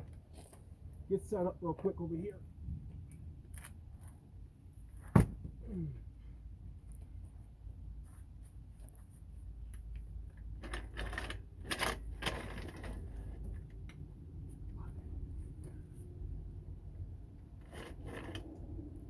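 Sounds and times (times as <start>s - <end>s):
rustling and scraping: 0.0s - 1.1s, 6.9s - 13.8s, 17.3s - 19.0s.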